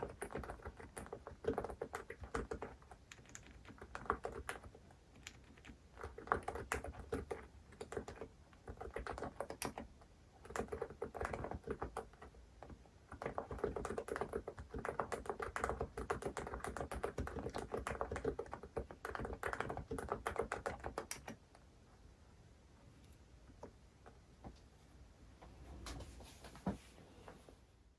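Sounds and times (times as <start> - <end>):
keyboard typing: 0.0 - 21.4.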